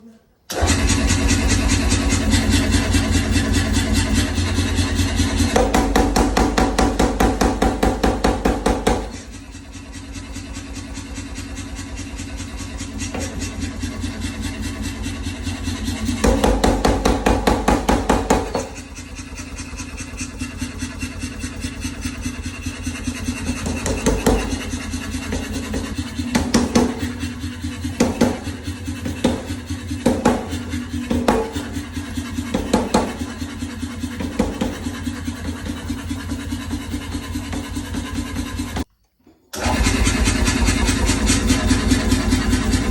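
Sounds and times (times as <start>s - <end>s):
power hammer striking: 5.3s - 9.6s, 11.9s - 20.6s, 22.5s - 38.9s.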